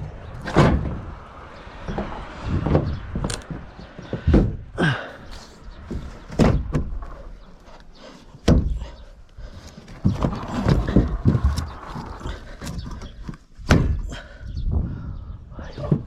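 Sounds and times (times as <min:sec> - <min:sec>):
heavy thumps and knocks: 0:00.0 - 0:01.2, 0:01.8 - 0:04.8, 0:05.8 - 0:07.3, 0:08.4 - 0:09.0, 0:09.8 - 0:15.0.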